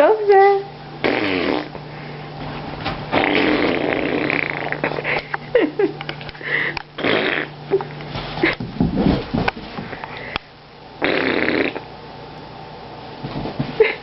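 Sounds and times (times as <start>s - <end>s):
fart noise: 1.0s - 1.8s, 3.1s - 5.1s, 7.0s - 7.6s, 11.0s - 11.9s.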